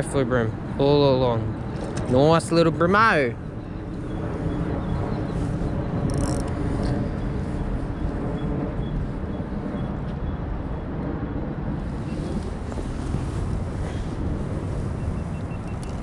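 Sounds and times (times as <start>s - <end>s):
low outdoor rumble: 0.0s - 16.0s.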